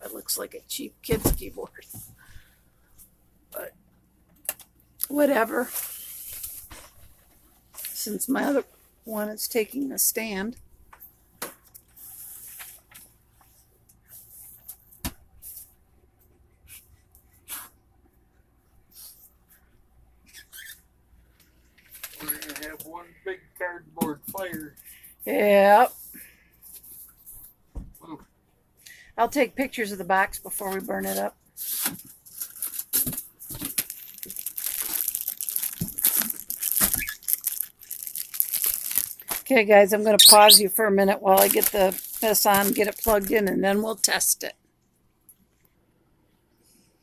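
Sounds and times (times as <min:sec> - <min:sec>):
plastic tearing: 0:31.6 - 0:39.5, 0:41.4 - 0:43.5
cardboard packaging rustling: 0:31.8 - 0:39.5, 0:41.3 - 0:43.5.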